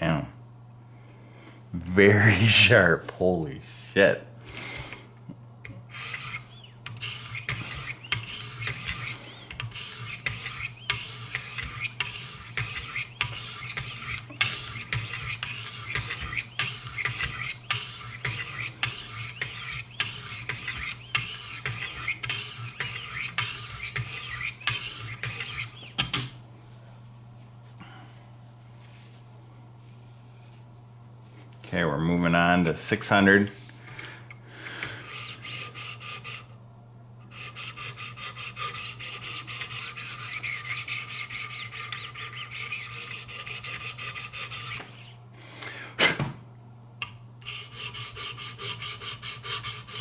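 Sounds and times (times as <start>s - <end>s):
abrasive rasping on knife blade: 5.9s - 25.9s, 37.3s - 44.9s.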